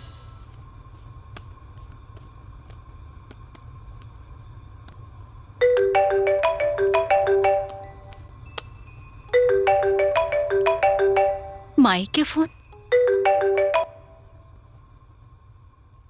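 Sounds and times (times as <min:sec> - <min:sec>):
marimba ringtone: 0:05.6 - 0:08.2, 0:09.3 - 0:11.8, 0:12.9 - 0:14.2.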